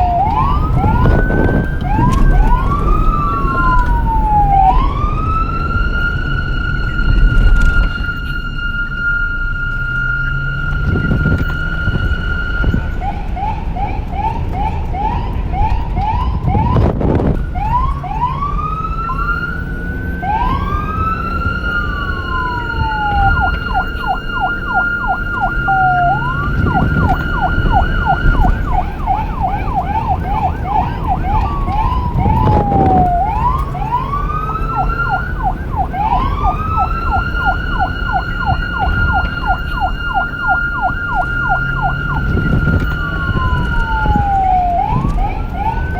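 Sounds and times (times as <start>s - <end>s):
low vehicle rumble: 0.0s - 45.9s
police siren: 0.0s - 45.9s.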